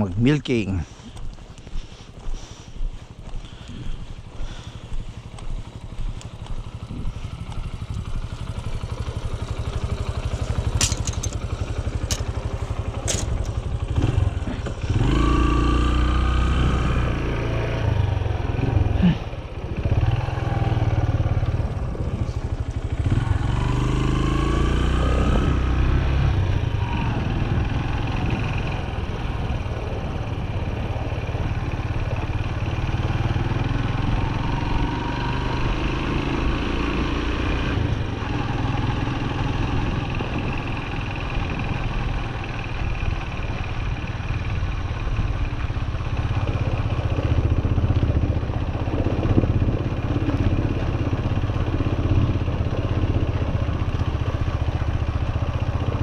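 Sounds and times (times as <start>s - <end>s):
motorbike engine revving: 6.8s - 42.0s
sharp clicks: 13.0s - 13.6s.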